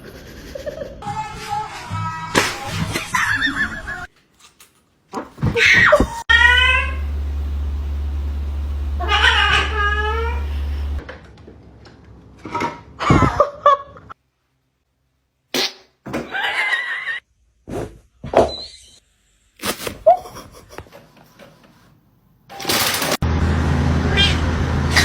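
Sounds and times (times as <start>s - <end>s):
cats meowing and yowling: 5.5s - 7.0s, 9.0s - 10.5s, 24.1s - 25.0s
steady low hum: 6.0s - 11.0s.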